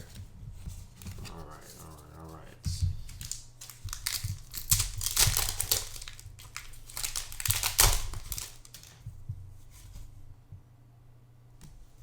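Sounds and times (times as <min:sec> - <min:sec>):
foil wrapper crinkling and tearing: 0:03.0 - 0:09.0.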